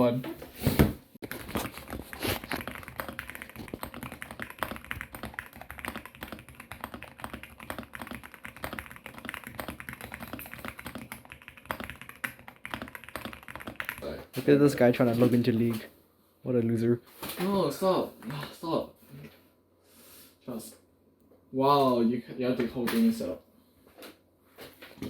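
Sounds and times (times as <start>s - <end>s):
fast typing on mechanical keyboard: 1.2s - 14.0s.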